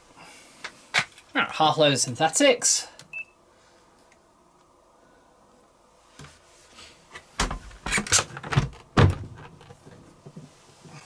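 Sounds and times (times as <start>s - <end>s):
washing machine door thud: 7.4s - 9.4s
washing machine door knocks and clatter: 8.4s - 9.4s.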